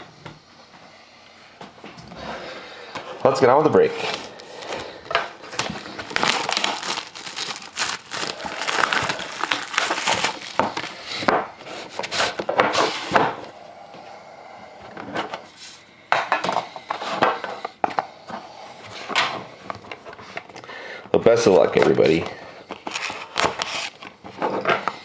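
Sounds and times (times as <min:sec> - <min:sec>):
box being handled: 0:04.0 - 0:11.0
plastic wrapping crinkling and tearing: 0:04.0 - 0:11.1, 0:22.7 - 0:24.0.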